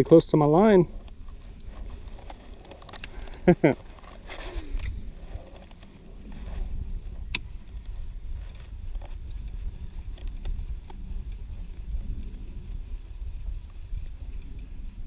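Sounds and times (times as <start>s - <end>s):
low outdoor rumble: 0.0s - 15.0s
faint ticks: 6.6s - 15.0s.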